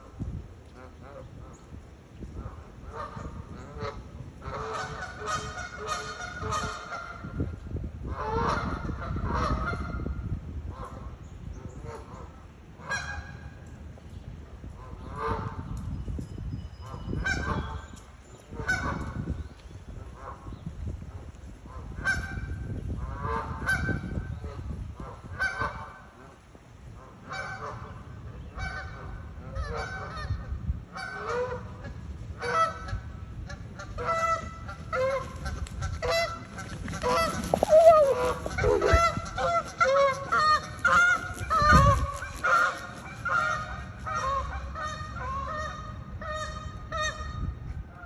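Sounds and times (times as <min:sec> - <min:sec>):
geese honking: 0:31.0 - 0:47.3.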